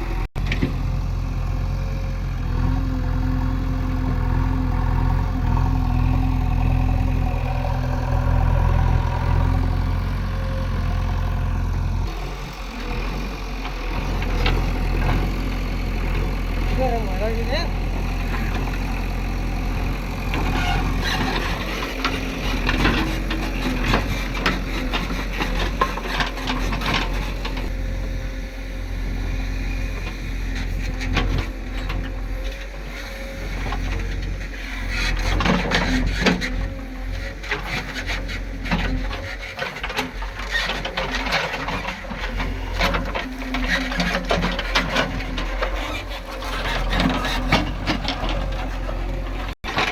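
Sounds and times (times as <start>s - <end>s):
diesel engine running: 0.0s - 49.9s
machine scraping and knocking: 20.2s - 27.8s, 30.1s - 49.9s.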